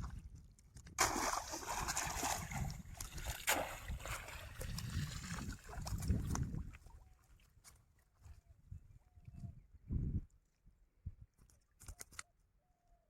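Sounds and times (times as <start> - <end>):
water splashing: 1.0 - 6.9.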